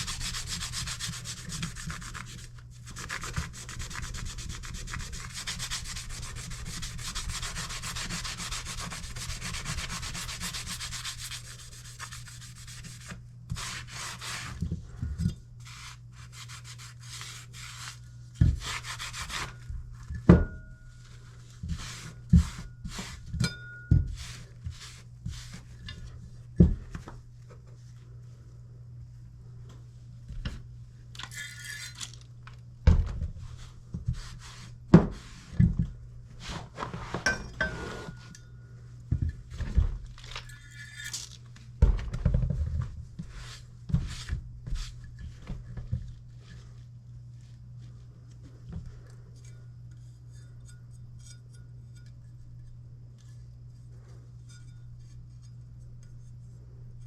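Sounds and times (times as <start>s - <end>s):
knife scraping on sharpening stone: 31.2s - 32.2s, 40.4s - 41.4s.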